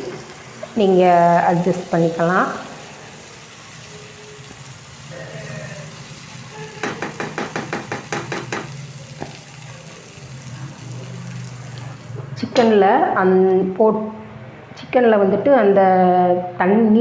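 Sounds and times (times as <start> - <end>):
chicken sizzling in a pan: 0.0 - 12.4.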